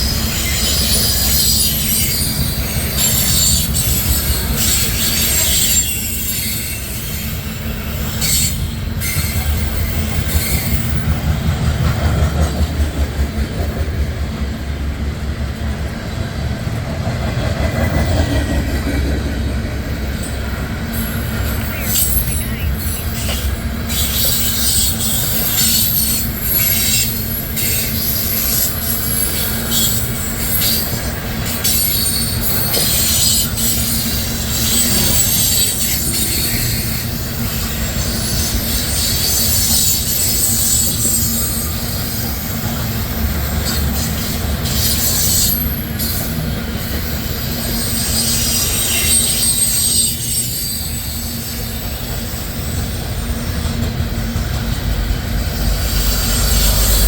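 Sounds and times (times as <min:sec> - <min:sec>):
high-pitched wheel squeal: 0:00.0 - 0:11.0, 0:20.9 - 0:54.3
train wheels rumbling: 0:00.0 - 0:57.0.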